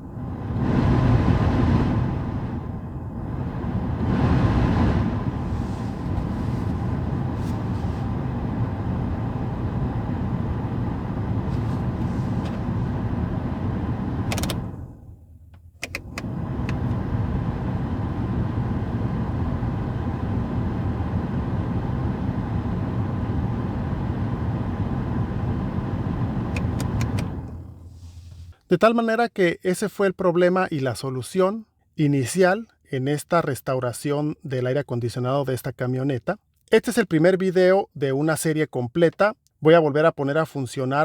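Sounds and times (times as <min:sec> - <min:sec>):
blower fan rushing air: 0:00.0 - 0:28.5.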